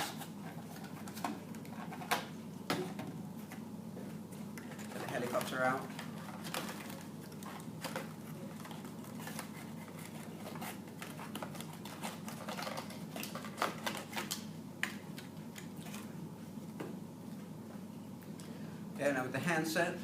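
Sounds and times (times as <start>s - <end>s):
low steady hum: 0.0s - 20.0s
plastic and cardboard crackles: 4.6s - 14.5s.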